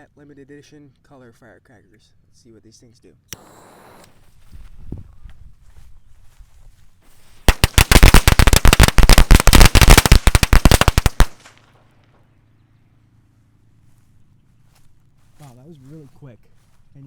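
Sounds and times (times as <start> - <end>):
firecrackers banging: 7.4 - 11.6.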